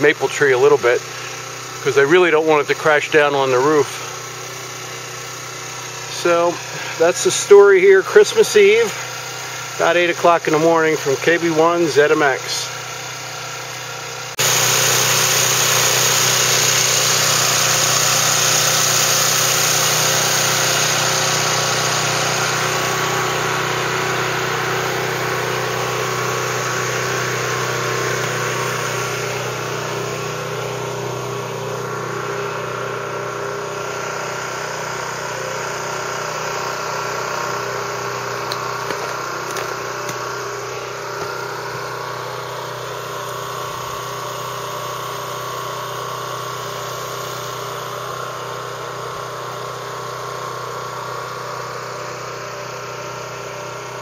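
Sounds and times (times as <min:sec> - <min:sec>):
portable generator engine running: 0:00.0 - 0:54.0.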